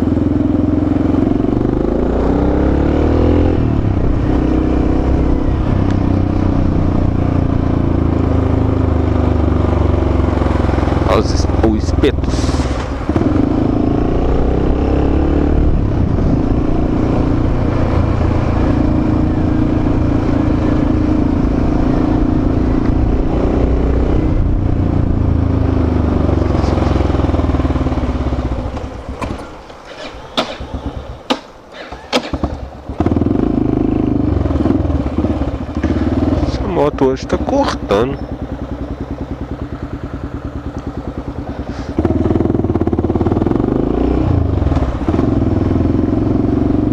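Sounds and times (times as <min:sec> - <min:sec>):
motorcycle engine running: 0:00.0 - 0:46.9.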